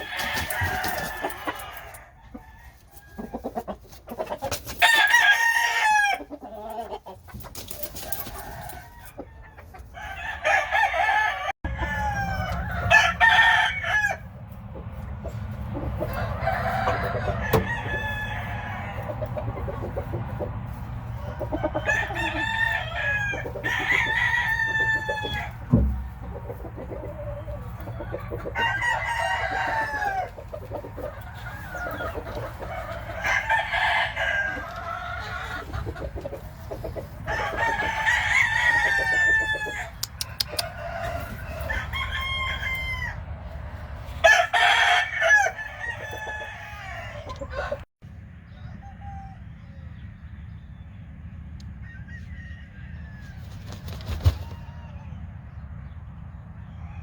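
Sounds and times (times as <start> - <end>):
chickens clucking: 0.0 - 57.0
roosters crowing: 0.0 - 57.0.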